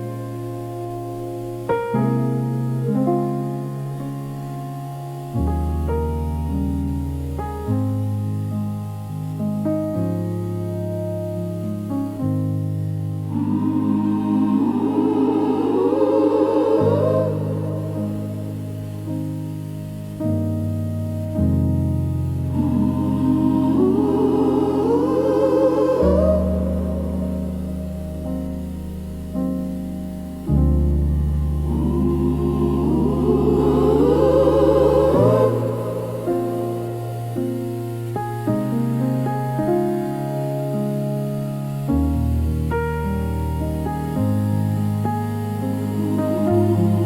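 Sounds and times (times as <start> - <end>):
piano chords: 0.0 - 47.0
gospel choir singing: 13.2 - 19.6, 21.9 - 29.0, 30.4 - 39.0, 44.3 - 47.0.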